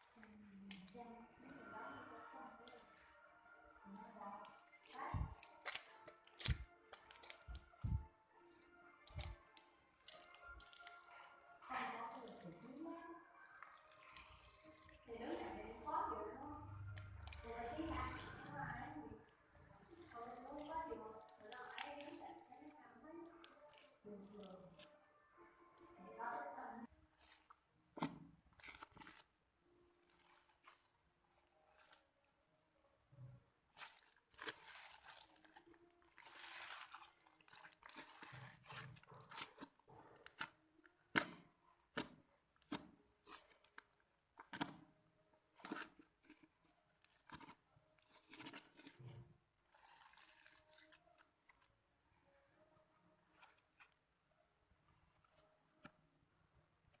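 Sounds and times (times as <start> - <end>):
slime crackling and sticky clicking: 0.0 - 25.0, 27.2 - 29.4, 33.7 - 44.9, 45.5 - 51.7.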